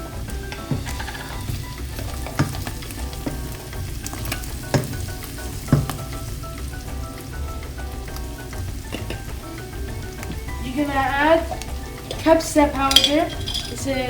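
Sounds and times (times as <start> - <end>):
sharp knocks: 0.0 - 7.1
meat and onions sizzling in oil: 0.0 - 14.0.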